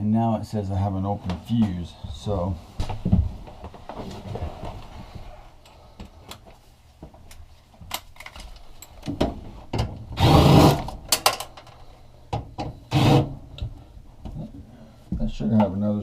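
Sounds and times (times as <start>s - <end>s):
power drill running: 10.2s - 10.8s.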